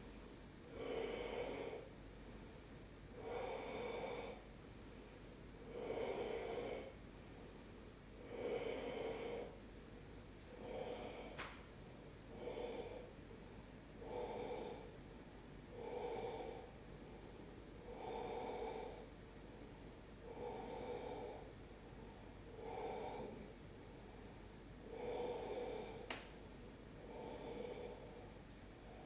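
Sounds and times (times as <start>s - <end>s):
slow throat breathing: 0.6s - 2.0s, 3.1s - 4.5s, 5.6s - 7.0s, 8.1s - 9.6s, 10.4s - 13.2s, 13.8s - 26.3s, 27.0s - 29.0s
faint click: 11.4s - 11.6s, 26.1s - 26.4s.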